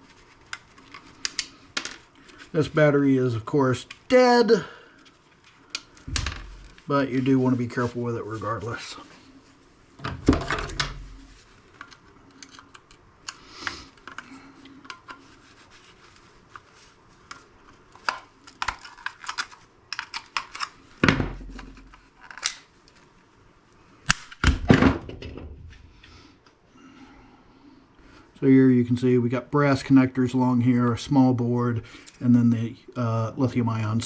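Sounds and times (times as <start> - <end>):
louder thumps: 10.0 - 11.3
plastic case clicks and scrapes: 10.0 - 11.4.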